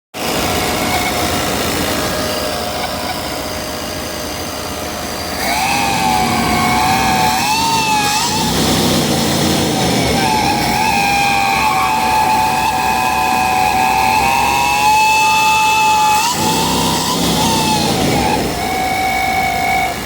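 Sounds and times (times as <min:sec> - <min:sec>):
car engine running: 0:00.2 - 0:20.0
high whistle from engine: 0:00.4 - 0:01.4, 0:05.1 - 0:20.0.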